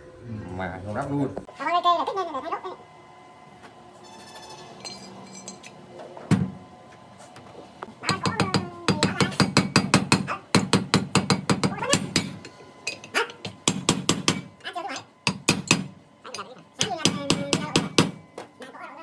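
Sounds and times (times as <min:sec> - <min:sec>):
hammer striking metal: 0:08.1 - 0:14.5, 0:15.2 - 0:16.0.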